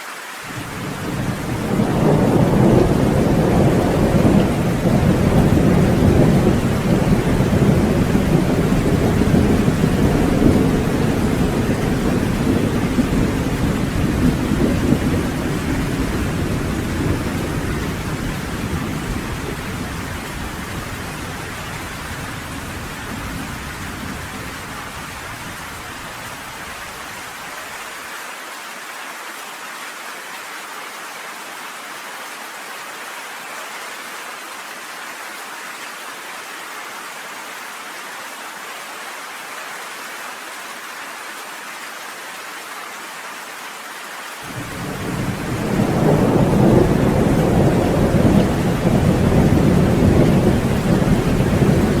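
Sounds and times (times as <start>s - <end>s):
steady rain falling: 0.0s - 52.0s
thunder rumbling: 0.5s - 26.5s, 44.5s - 52.0s.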